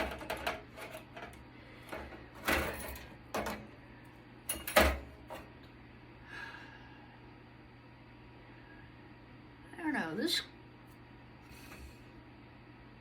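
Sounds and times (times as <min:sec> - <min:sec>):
hard parts clattering on work surface: 0:00.0 - 0:03.7, 0:04.5 - 0:05.4.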